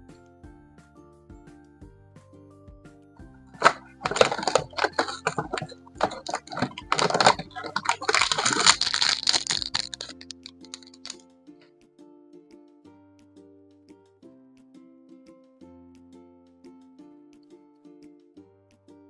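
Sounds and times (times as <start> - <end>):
soft background music: 0.0 - 19.0
plastic packaging crinkling: 3.5 - 11.2.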